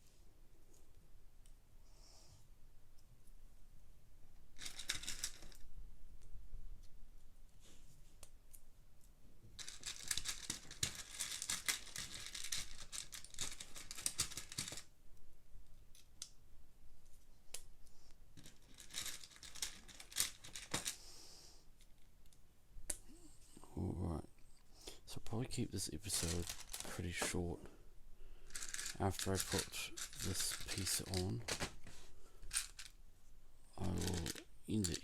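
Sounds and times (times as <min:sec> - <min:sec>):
small plastic clicks: 0:08.5 - 0:14.9, 0:28.5 - 0:31.7
plastic bags crinkling: 0:09.6 - 0:14.8, 0:18.5 - 0:20.9, 0:26.0 - 0:27.5, 0:28.4 - 0:33.0, 0:33.8 - 0:35.0.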